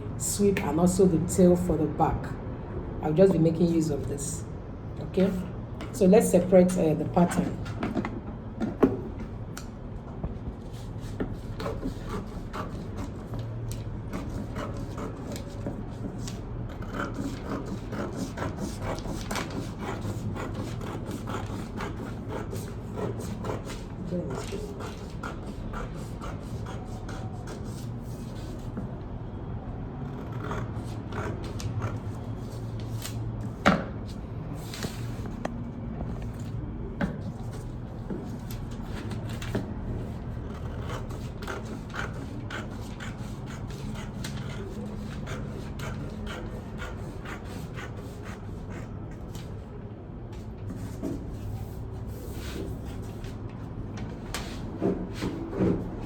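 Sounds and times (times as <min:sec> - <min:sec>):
paper rustling and clicking: 0:24.3 - 0:25.1.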